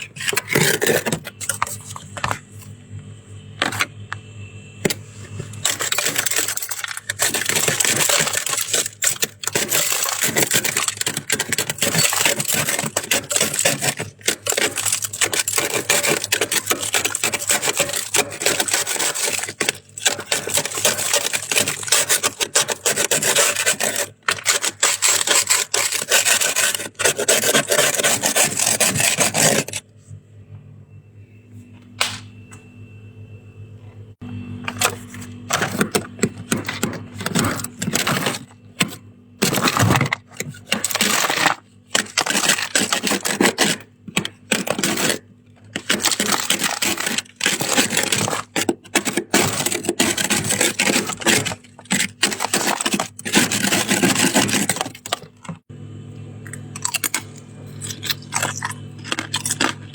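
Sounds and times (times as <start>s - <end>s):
freezer frost crunching: 0.0s - 2.8s, 3.6s - 30.0s, 34.6s - 59.9s.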